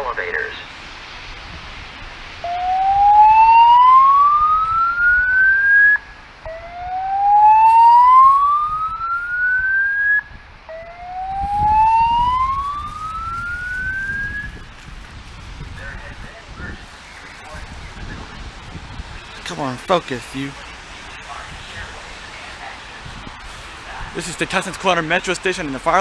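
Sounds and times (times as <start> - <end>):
fire alarm whoop tone: 2.4 - 14.7.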